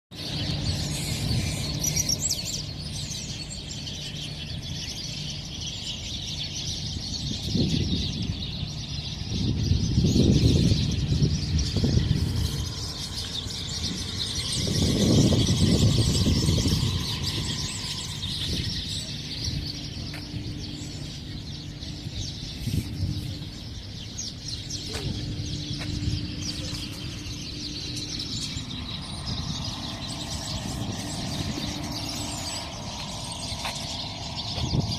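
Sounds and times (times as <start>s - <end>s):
birds chirping: 0.1s - 34.9s
low rumble: 6.2s - 34.9s.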